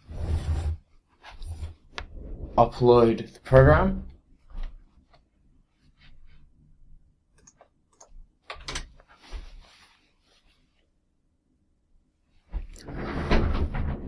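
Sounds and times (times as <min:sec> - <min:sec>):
sharp clicks and light taps: 0:07.4 - 0:09.0
short rustle: 0:09.1 - 0:10.9.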